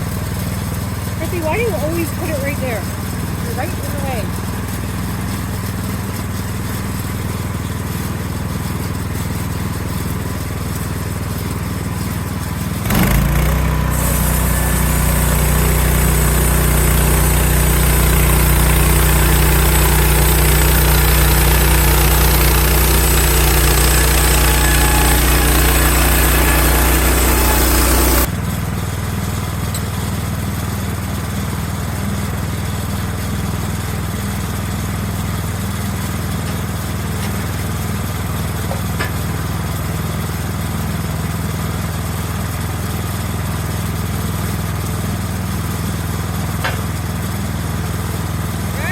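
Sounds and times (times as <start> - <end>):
sawmill engine running: 0.0 - 48.9.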